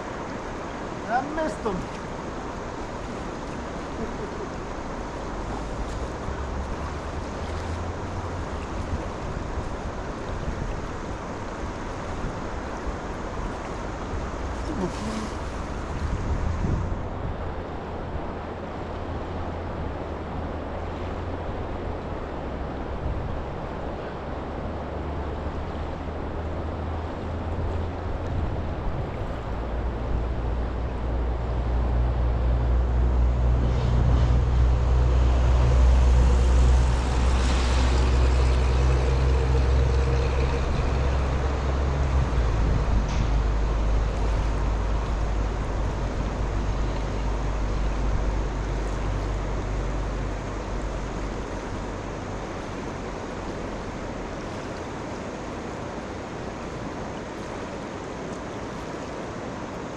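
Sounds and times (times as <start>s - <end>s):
engine passing by: 11.1s - 17.6s, 30.5s - 56.8s.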